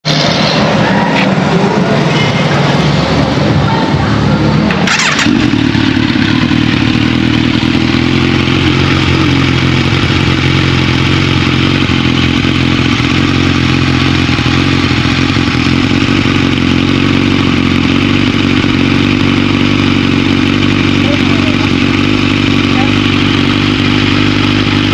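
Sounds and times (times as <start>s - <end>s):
motorcycle engine running: 0.0s - 24.9s.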